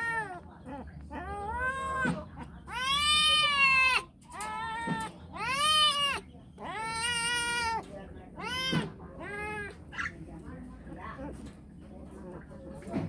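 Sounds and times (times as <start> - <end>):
cat meowing: 1.1 - 7.8.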